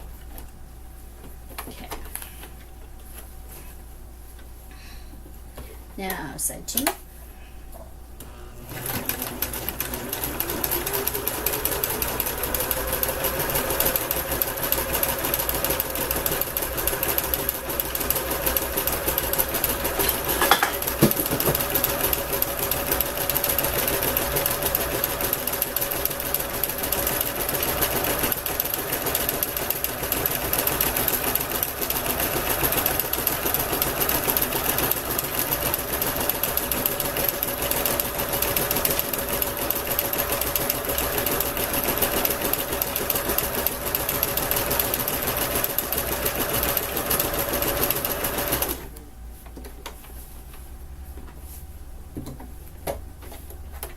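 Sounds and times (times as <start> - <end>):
sewing machine stitching: 8.7 - 48.9.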